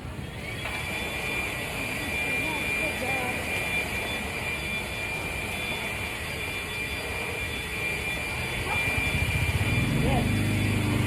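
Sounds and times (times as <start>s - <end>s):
lawn mower engine starting and running: 0.0s - 11.0s
steady high whine: 0.0s - 11.0s.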